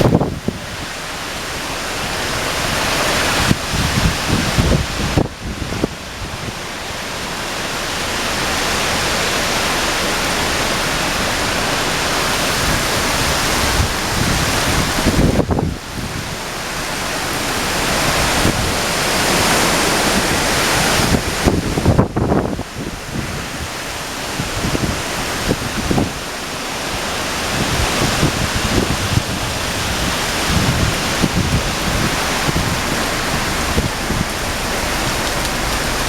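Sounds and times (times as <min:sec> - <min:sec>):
wind gusts buffeting microphone: 0:00.0 - 0:07.7, 0:09.4 - 0:36.0
heavy rain hiss: 0:00.0 - 0:36.0.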